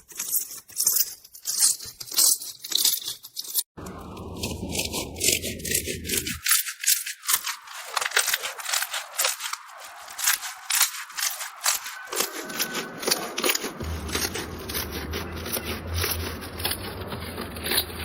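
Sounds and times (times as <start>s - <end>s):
slime crackling and popping: 6.5s - 18.0s.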